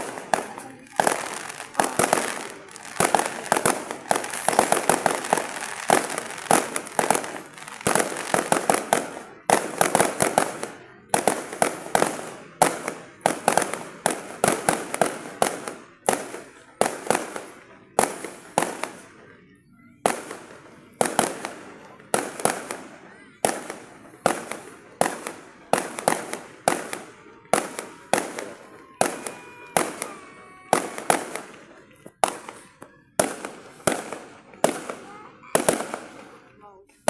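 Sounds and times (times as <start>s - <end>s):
firework bangs and cracks: 0.0s - 37.0s
firework crackle and echo: 0.0s - 37.0s.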